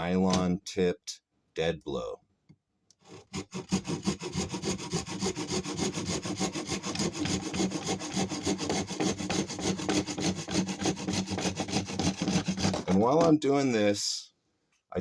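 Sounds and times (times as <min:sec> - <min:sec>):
saw cutting wood: 0:03.0 - 0:13.3.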